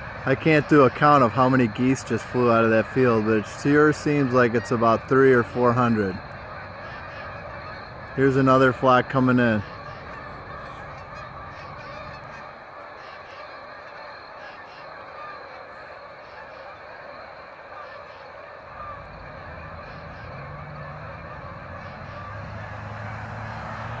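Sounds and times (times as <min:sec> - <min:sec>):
geese honking: 0:00.0 - 0:24.0.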